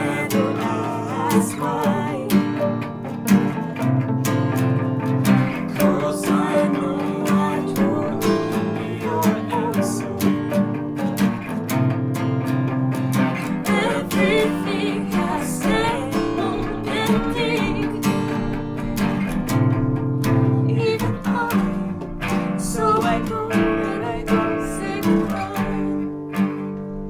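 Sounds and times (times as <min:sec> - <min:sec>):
lead guitar: 0:00.0 - 0:27.0
strummed rhythm guitar: 0:00.0 - 0:27.0
viola: 0:00.0 - 0:27.0
wavering melody line: 0:05.5 - 0:11.8.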